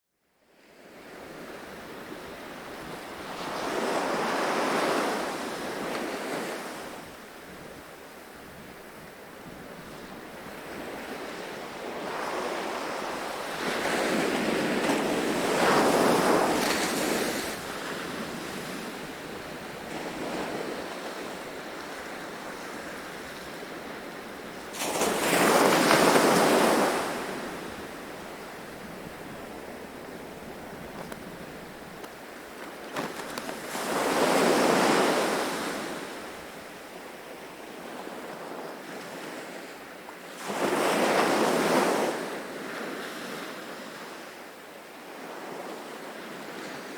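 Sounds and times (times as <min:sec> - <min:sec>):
ocean waves breaking: 0:10.6 - 0:36.6.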